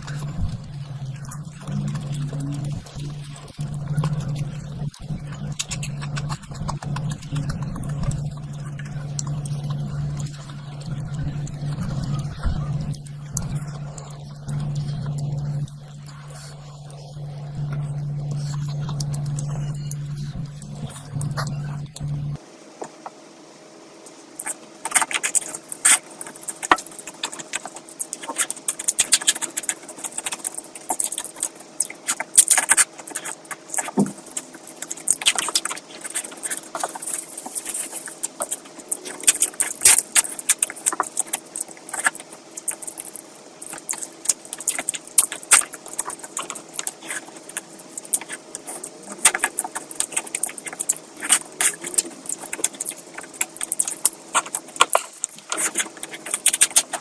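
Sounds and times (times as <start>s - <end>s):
person chewing and lip-smacking: 0.0s - 22.4s, 24.4s - 57.0s
faint steady hum: 0.0s - 57.0s.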